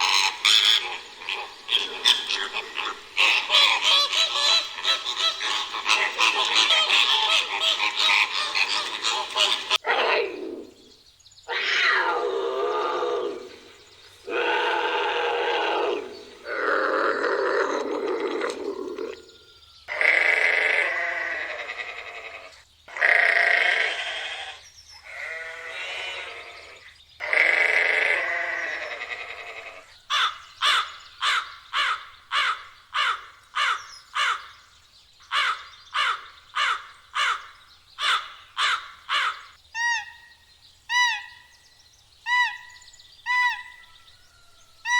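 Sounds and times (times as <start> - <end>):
harsh bleat-like animal calls: 19.9 - 29.9.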